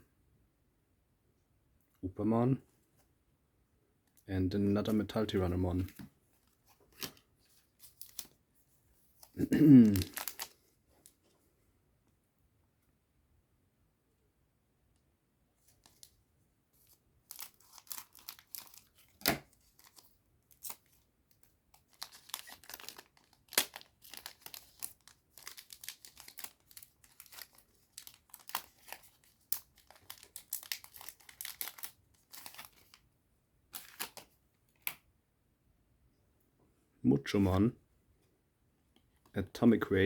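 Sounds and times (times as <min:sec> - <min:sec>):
wrapper tearing and crinkling: 0:07.8 - 0:08.4, 0:09.2 - 0:10.6, 0:17.2 - 0:21.0, 0:21.8 - 0:33.0, 0:33.8 - 0:34.2.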